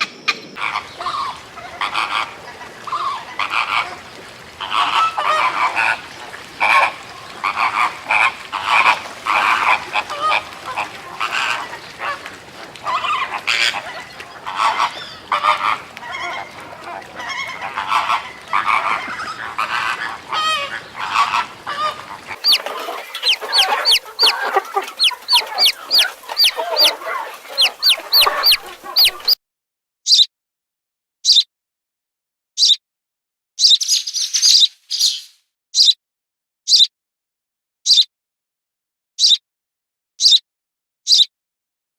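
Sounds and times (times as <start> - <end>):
flock of birds honking: 0.6 - 29.4
small bird chirping: 22.4 - 29.4.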